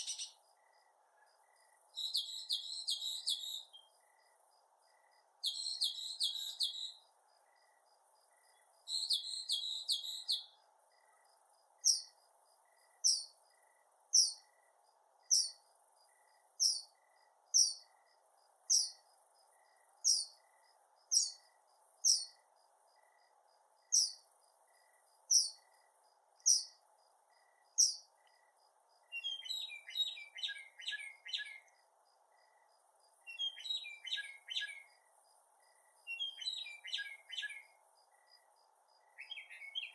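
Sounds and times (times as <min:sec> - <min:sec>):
mockingbird singing: 0:00.0 - 0:00.4, 0:02.0 - 0:03.9, 0:05.4 - 0:07.0, 0:08.9 - 0:10.5, 0:29.1 - 0:31.7, 0:33.3 - 0:34.9, 0:36.1 - 0:37.7, 0:39.2 - 0:39.9.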